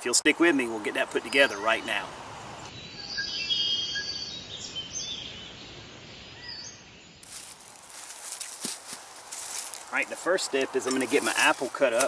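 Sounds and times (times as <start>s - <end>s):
birds chirping: 0.0s - 12.0s
steady outdoor hiss: 0.0s - 12.0s.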